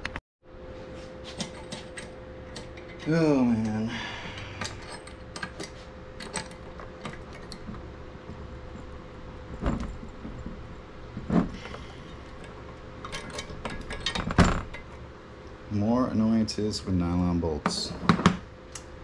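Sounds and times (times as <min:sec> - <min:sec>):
metal hardware clinking: 0:01.3 - 0:07.9, 0:08.5 - 0:15.0.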